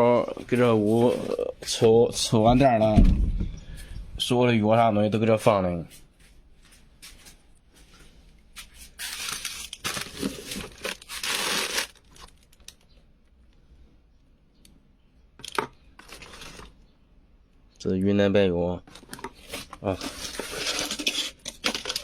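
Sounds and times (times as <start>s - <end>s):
plastic bags crinkling: 8.8s - 12.9s, 15.4s - 16.8s, 18.9s - 22.0s.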